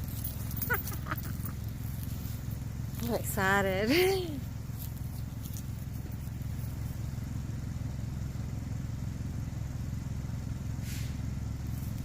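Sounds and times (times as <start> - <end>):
small engine pulsing: 0.0 - 12.0
brief hiss: 10.8 - 11.2.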